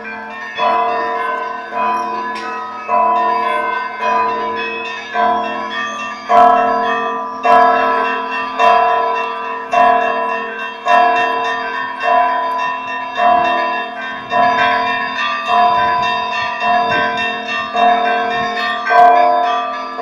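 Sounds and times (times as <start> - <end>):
small bells chiming quickly: 0.0 - 20.0.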